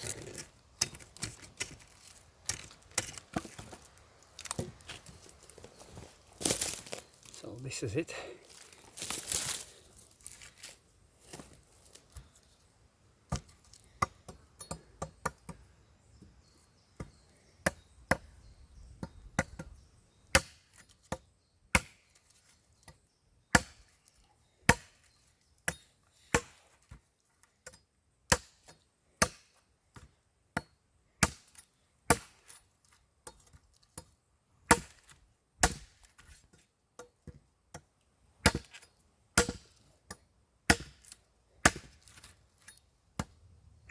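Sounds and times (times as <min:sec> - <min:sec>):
machete chopping dry wood: 0:13.3 - 0:15.6, 0:19.0 - 0:24.0, 0:24.6 - 0:27.0, 0:27.6 - 0:32.6, 0:33.2 - 0:36.4, 0:37.0 - 0:43.9.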